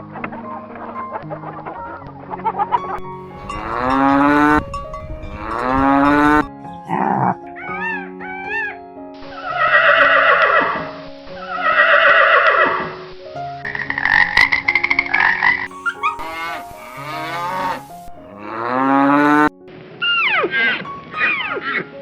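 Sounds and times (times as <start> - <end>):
background music: 0.0 - 22.0
rising pitched animal calls: 5.3 - 7.3, 15.7 - 19.5
rapid pulsing animal calls: 15.7 - 18.6
harsh animal calls: 15.7 - 19.5.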